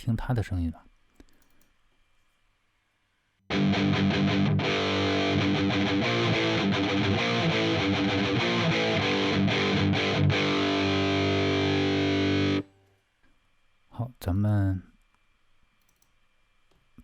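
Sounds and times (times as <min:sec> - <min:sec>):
distorted electric guitar riff: 0:03.5 - 0:12.7.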